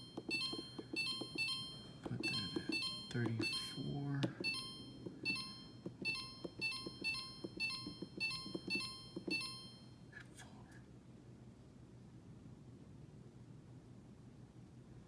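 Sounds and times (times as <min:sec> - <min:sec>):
finger tapping button: 0:00.0 - 0:09.6.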